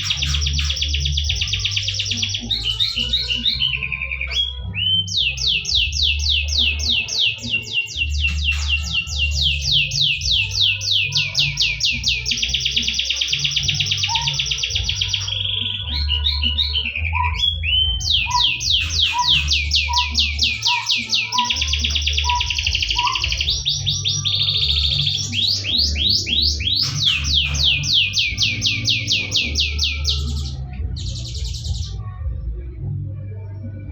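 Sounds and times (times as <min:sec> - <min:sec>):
canary trilling: 0:00.0 - 0:32.1
low steady background bass: 0:21.5 - 0:33.9.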